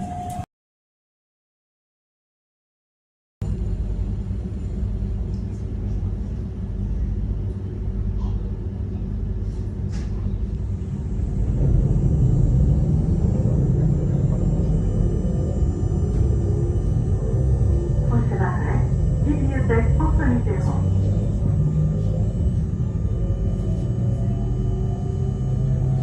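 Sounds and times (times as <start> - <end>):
electric train rumbling: 0.0 - 0.4, 3.4 - 26.0
high steady whining tones: 10.4 - 26.0.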